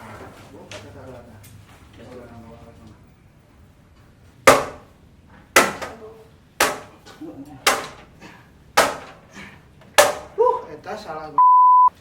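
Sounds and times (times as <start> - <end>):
hammer strikes: 4.5 - 4.9, 5.6 - 7.0, 7.6 - 8.1, 8.8 - 9.3, 9.9 - 10.4.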